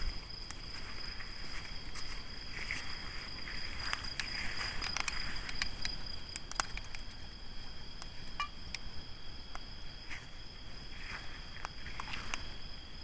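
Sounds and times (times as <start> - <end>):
crickets trilling: 0.0 - 13.0
campfire crackling and popping: 3.9 - 7.2.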